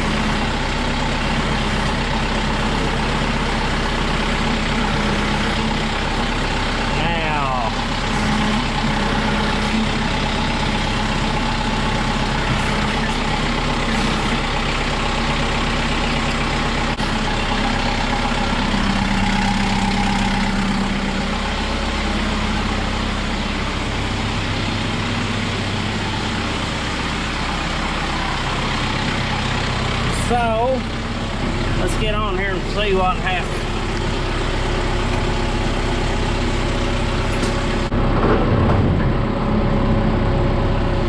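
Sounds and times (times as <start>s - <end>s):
diesel tractor engine idling: 0.0s - 41.0s.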